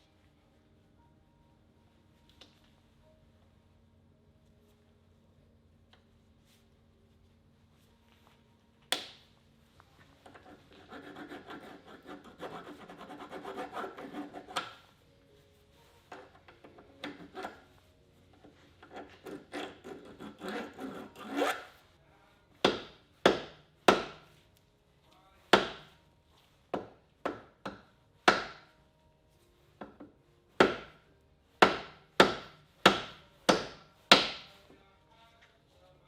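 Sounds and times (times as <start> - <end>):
hand scraping hard surface: 10.2 - 14.9.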